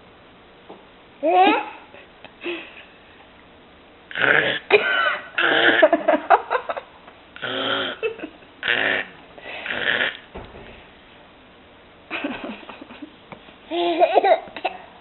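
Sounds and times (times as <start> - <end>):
person burping loudly: 7.4 - 10.3.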